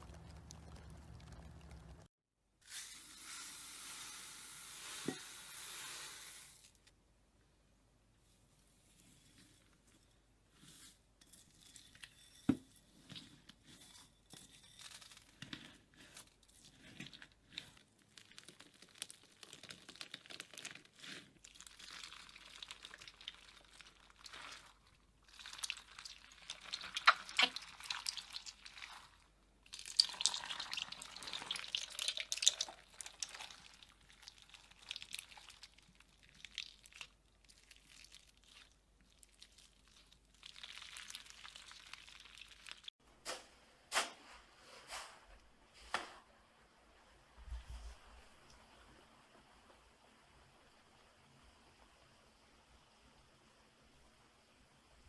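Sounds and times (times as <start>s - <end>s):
slime squishing and popping: 25.4s - 28.7s.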